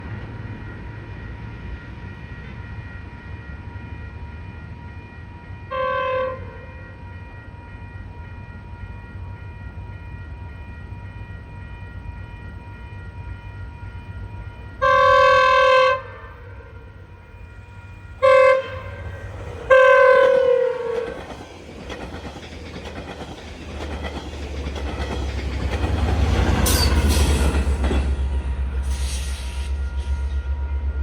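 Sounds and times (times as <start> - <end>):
train rumble: 0.0 - 31.0
train horn blasts: 5.7 - 6.8, 14.8 - 16.9, 18.2 - 21.4.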